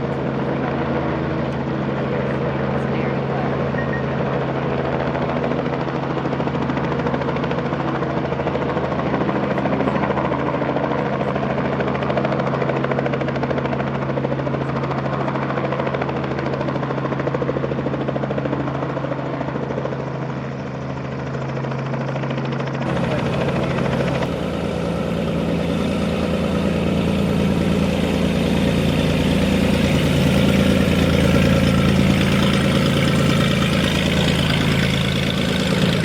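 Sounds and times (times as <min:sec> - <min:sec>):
aircraft engine drone: 0:14.7 - 0:36.0.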